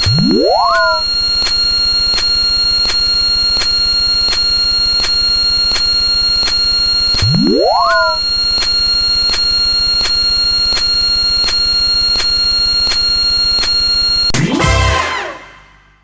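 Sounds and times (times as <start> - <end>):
shrill high whistling tones: 0.0 - 2.5, 6.9 - 14.3
electronic buzz: 0.0 - 14.4
sharp electronic clicks: 0.0 - 14.4.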